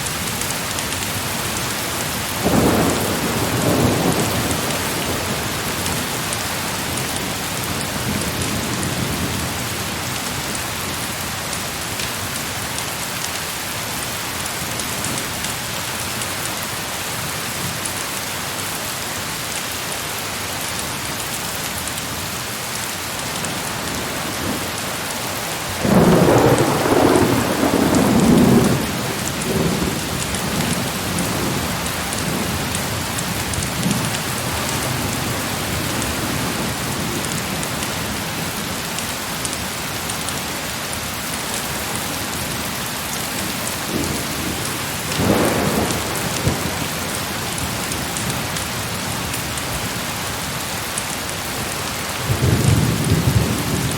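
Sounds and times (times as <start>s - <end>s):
heavy rain: 0.0s - 53.9s
thunder rumbling: 1.1s - 9.9s, 23.5s - 37.7s, 43.4s - 49.4s, 52.2s - 53.9s.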